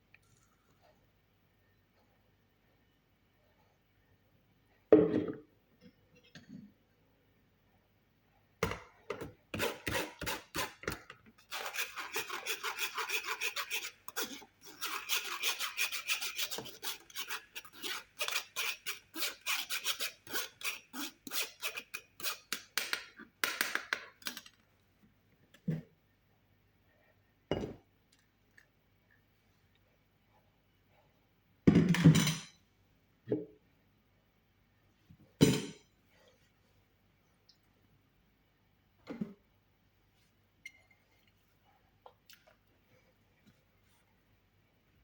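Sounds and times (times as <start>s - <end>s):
kitchen utensil scraping: 9.6s - 22.6s.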